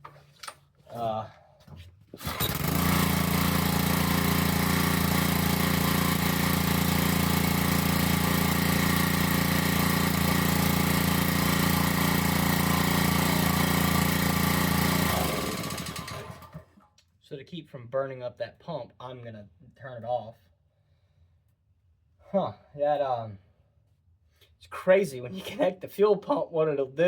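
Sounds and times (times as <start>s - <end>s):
small engine running: 2.2s - 16.7s.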